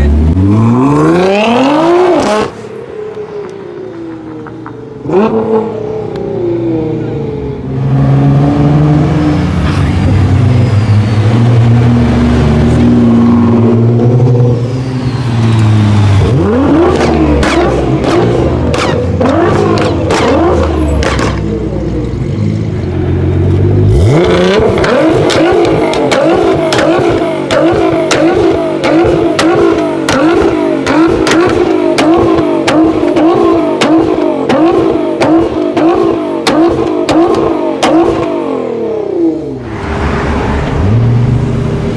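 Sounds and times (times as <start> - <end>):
car engine revving hard: 0.0 - 2.6, 11.2 - 21.5, 23.7 - 39.0
exhaust pops and bangs: 16.9 - 21.4, 24.7 - 38.2.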